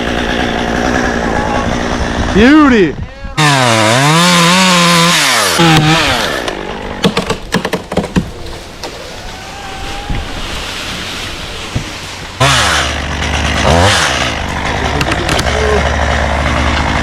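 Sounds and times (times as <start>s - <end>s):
chainsaw cutting: 0.0s - 17.0s
wood cracking and knocking: 5.7s - 17.0s.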